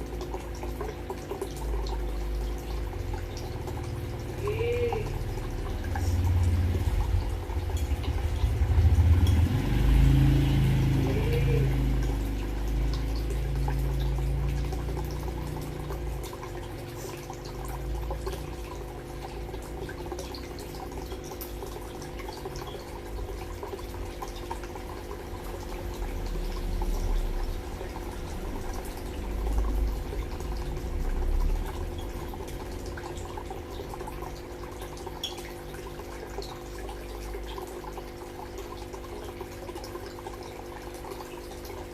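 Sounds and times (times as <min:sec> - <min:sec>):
water running and dripping: 0:00.0 - 0:41.9
low rumbling: 0:04.4 - 0:13.6.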